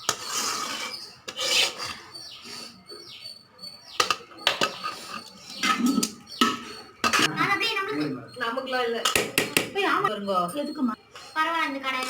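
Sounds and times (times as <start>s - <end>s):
spoon scraping rice in pot: 0.0s - 3.1s, 4.0s - 7.3s.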